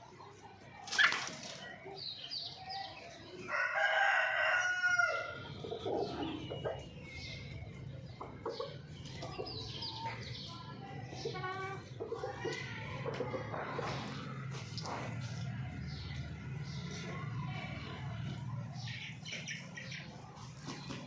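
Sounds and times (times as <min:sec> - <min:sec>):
chickens clucking: 0:00.0 - 0:21.0
rooster crowing: 0:03.5 - 0:05.4.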